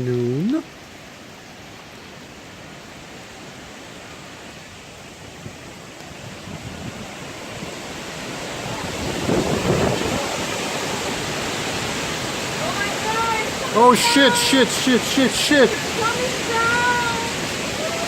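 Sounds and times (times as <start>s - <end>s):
wind blowing hard: 5.2s - 18.0s.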